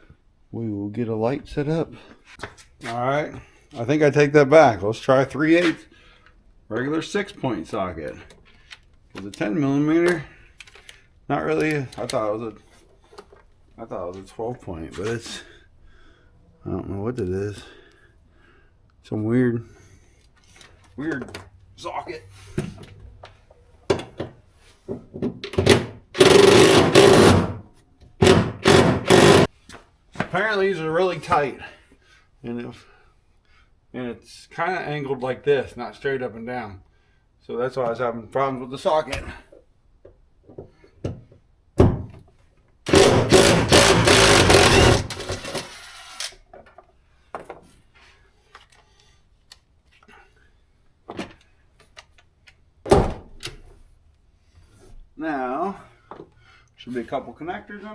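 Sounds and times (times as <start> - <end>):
cordless power tool running: 25.7 - 27.6, 28.2 - 29.5, 42.9 - 46.3
tools knocking and clicking: 28.2 - 29.5.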